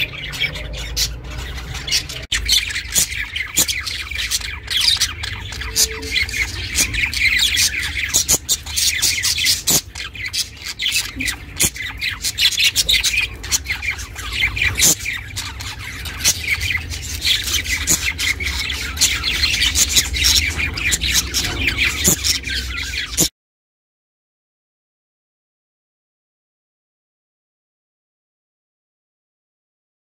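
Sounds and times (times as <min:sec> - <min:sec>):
budgie chirping and chattering: 0:00.0 - 0:23.3.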